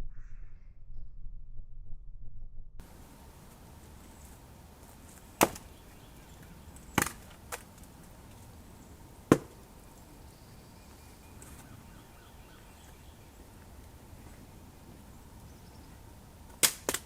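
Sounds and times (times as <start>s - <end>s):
sharp knocks: 9.3s - 9.6s.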